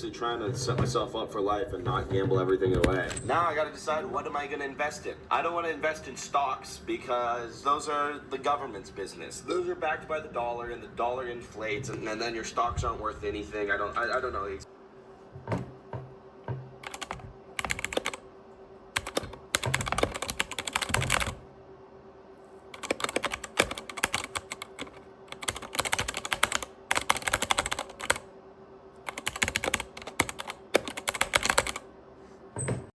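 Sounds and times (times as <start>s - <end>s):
faint steady hum: 0.0s - 32.9s
mechanical keyboard key clicks: 16.8s - 18.2s, 19.0s - 21.4s, 22.8s - 28.2s, 29.1s - 31.8s.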